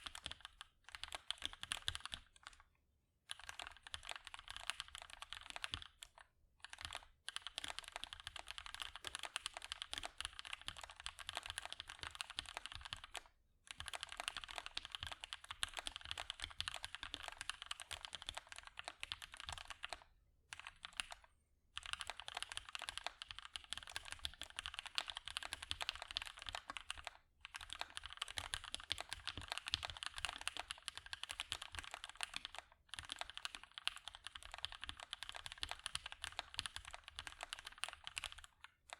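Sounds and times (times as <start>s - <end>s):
mechanical keyboard typing: 0.0s - 2.6s, 3.3s - 21.2s, 21.8s - 38.9s.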